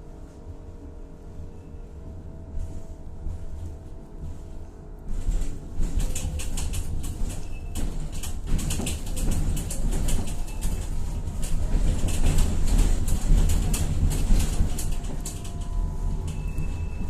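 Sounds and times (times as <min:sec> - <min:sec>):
tram wheels rumbling: 0:00.0 - 0:17.0
car body clicking and rattling: 0:05.9 - 0:15.7.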